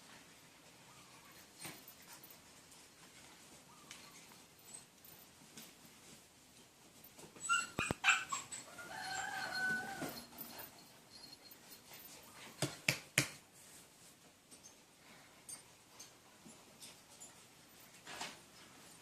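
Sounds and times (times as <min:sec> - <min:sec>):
dog yelping: 0:07.4 - 0:10.2
dog whining: 0:07.4 - 0:10.8.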